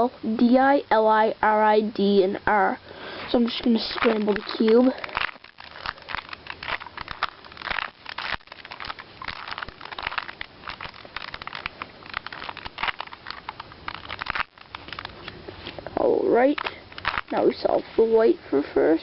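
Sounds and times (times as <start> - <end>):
puzzle cube clicking and rattling: 3.3 - 15.4, 16.4 - 18.1.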